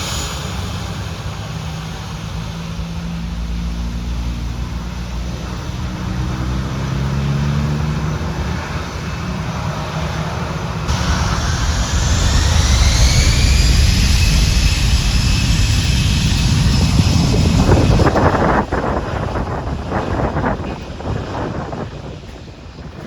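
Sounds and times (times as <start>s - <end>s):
aircraft engine whine: 0.0s - 23.0s
bus diesel engine running: 10.9s - 19.8s.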